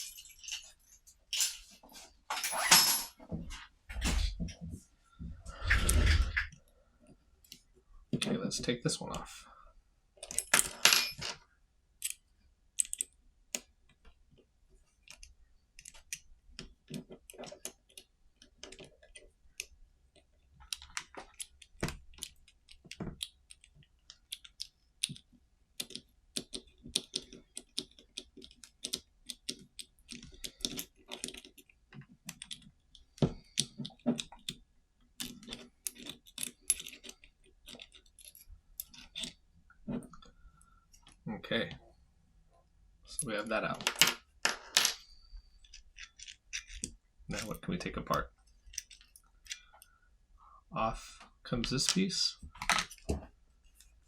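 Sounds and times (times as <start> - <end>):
metal parts clicking and clinking: 10.2 - 11.4, 25.8 - 32.7, 35.2 - 39.4, 43.2 - 47.6, 48.6 - 49.9.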